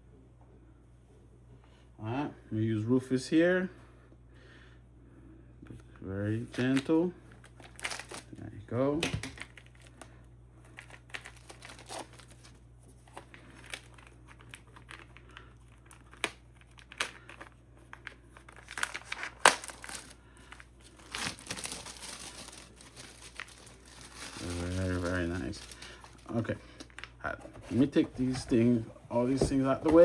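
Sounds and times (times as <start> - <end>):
plastic wrap crinkling: 6.5 - 30.0.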